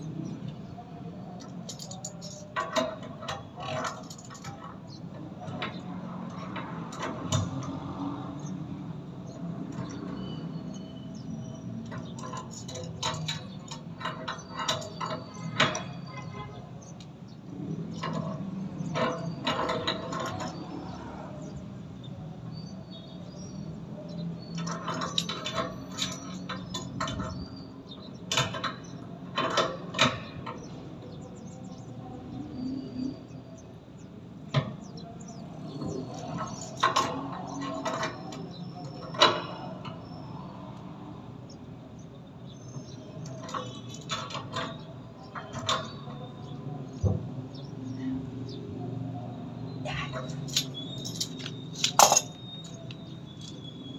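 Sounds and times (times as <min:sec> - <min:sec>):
clinks and knocks of metal tools: 0:00.4 - 0:07.8, 0:10.7 - 0:20.9, 0:24.1 - 0:31.8, 0:34.5 - 0:40.0, 0:42.8 - 0:47.0, 0:49.9 - 0:53.7.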